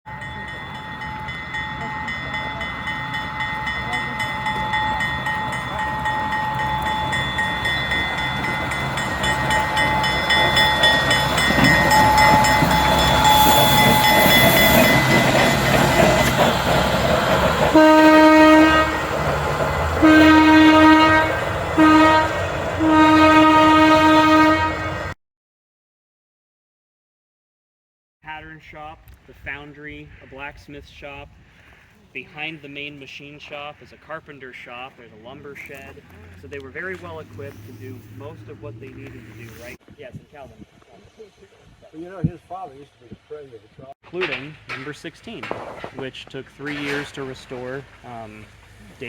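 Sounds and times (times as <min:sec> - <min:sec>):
train approaching: 0:00.1 - 0:25.2, 0:29.5 - 0:49.0
train horn blasts: 0:17.7 - 0:19.2, 0:19.9 - 0:25.2.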